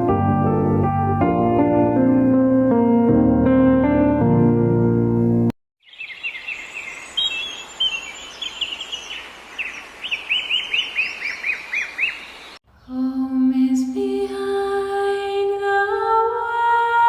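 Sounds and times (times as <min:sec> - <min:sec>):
small birds chirping: 0:05.8 - 0:13.0.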